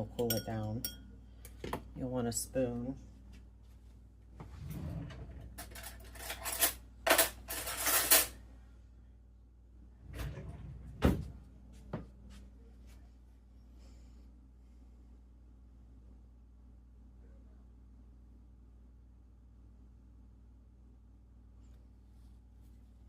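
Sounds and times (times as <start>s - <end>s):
cutlery clinking and rattling: 5.6s - 8.4s.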